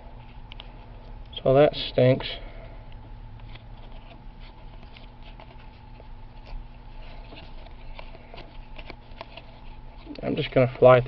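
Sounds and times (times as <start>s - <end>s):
low electrical hum: 0.0s - 11.0s
cards clicking and rustling: 3.4s - 10.6s.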